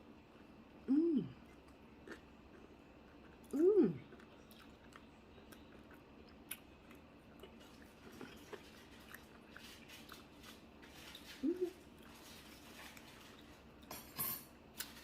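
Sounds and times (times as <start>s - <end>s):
person humming: 0.8s - 1.4s, 3.5s - 4.0s, 11.4s - 11.8s
chewing crispy food: 1.4s - 13.9s, 14.7s - 15.0s.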